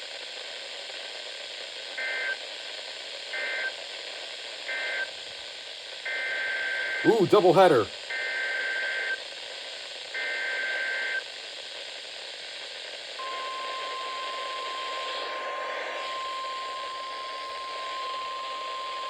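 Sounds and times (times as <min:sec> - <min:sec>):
steady warning alarm tone: 0:13.2 - 0:19.0.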